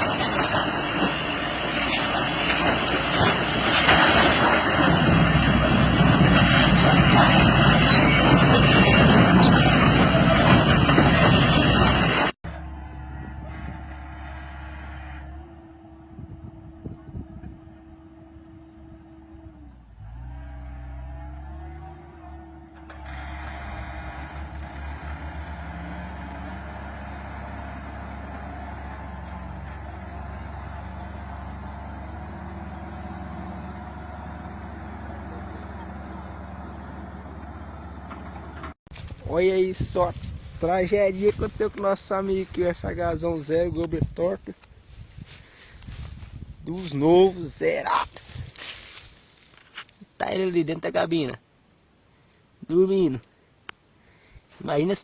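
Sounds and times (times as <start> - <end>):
loud steady engine noise: 0.0 - 38.8.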